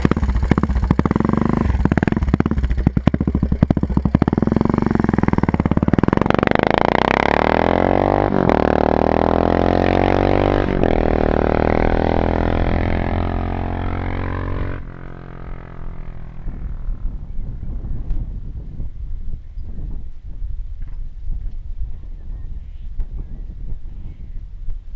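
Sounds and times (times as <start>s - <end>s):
motorcycle engine revving: 0.0s - 17.4s.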